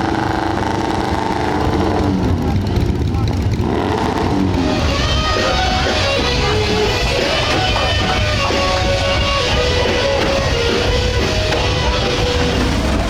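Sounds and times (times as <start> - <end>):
rock music with guitar: 4.5 - 13.0.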